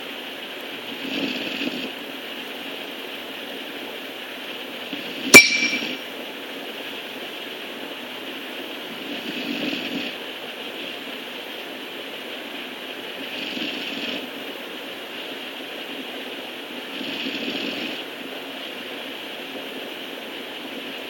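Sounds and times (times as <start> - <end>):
puppy snoring: 0.9 - 2.0, 8.9 - 10.2, 13.2 - 14.4, 16.9 - 18.1
sharp clink: 5.4 - 6.0.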